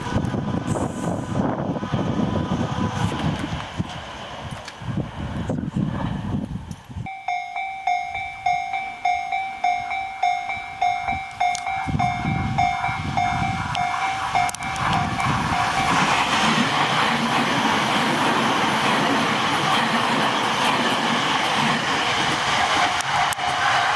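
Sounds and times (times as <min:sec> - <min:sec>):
train running over crossing: 0:00.0 - 0:23.9
railway crossing warning bell: 0:07.0 - 0:23.9.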